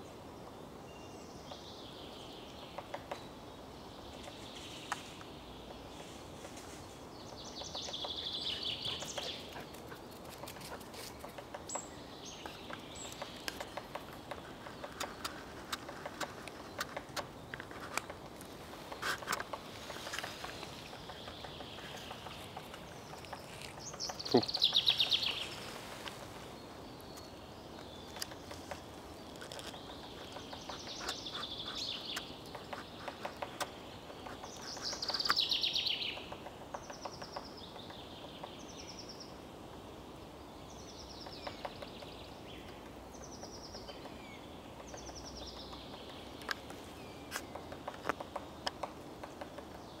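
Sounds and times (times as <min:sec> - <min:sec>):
songbirds trilling: 0:00.0 - 0:50.0
woodpecker tapping on tree: 0:02.7 - 0:03.3, 0:07.3 - 0:11.8, 0:12.4 - 0:25.4, 0:27.1 - 0:38.6, 0:41.2 - 0:50.0.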